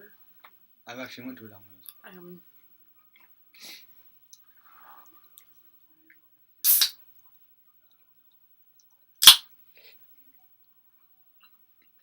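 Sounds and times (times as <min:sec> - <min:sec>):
sharp cracks: 0:06.7 - 0:07.0, 0:09.2 - 0:09.4.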